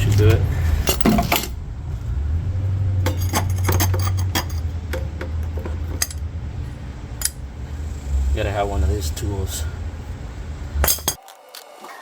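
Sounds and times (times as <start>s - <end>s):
metal tools clinking: 0.0s - 1.6s, 3.0s - 6.3s, 7.2s - 7.4s, 10.8s - 11.2s
steady low hum: 0.0s - 11.2s.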